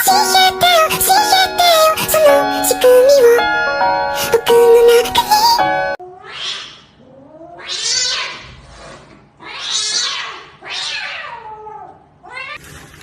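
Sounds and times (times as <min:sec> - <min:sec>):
cat yowling: 0:09.4 - 0:12.6.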